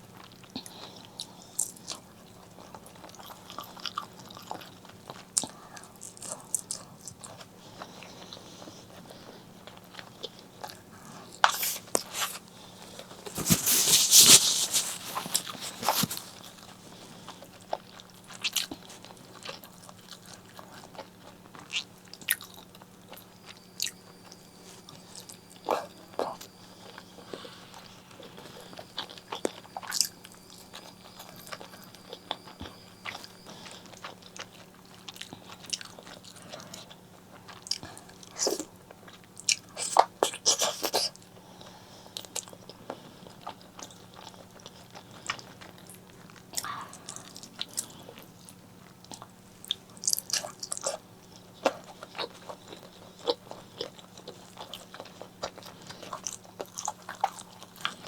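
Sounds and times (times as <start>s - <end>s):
chewing and crunching: 0.0s - 58.0s
faint steady hum: 0.0s - 58.0s.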